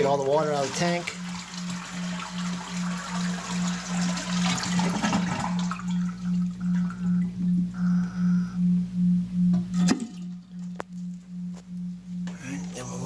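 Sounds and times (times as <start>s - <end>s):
low pulsing tone: 0.0s - 13.0s
toilet flushing: 0.4s - 6.1s.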